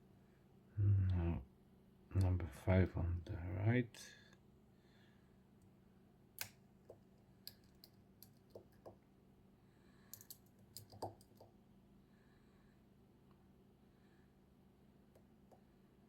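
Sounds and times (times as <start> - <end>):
lock pick clicking in a lock: 10.2 - 11.4.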